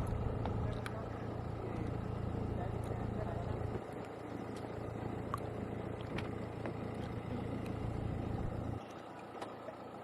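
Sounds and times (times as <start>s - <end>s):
street hum: 0.0s - 10.0s
vehicle engine rumble: 0.0s - 10.0s.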